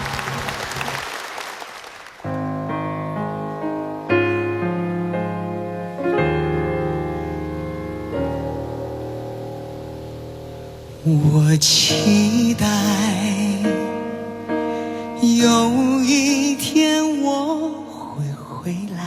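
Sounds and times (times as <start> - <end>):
applause: 0.0 - 2.4
slow piano chords: 2.2 - 19.0.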